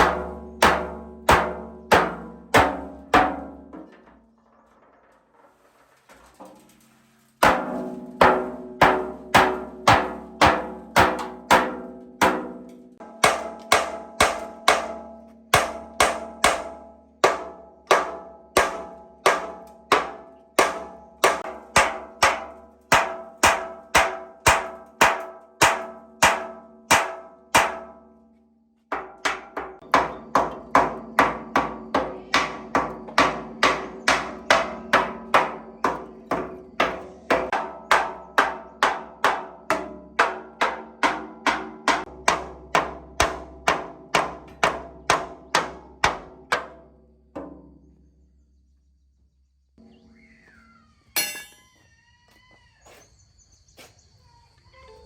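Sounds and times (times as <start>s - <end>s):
hammering on metal: 0.0s - 4.2s, 7.4s - 28.1s, 28.9s - 47.8s, 51.2s - 51.6s.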